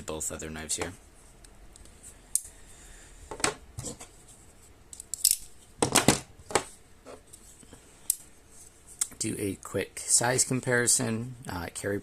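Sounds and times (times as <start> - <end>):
pocket knives clicking and scraping: 4.9 - 5.5.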